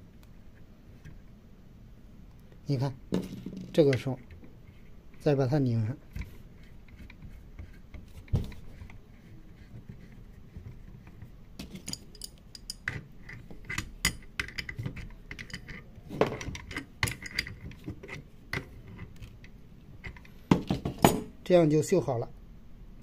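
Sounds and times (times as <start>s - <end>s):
metal tool clinking on valve: 11.8s - 12.9s.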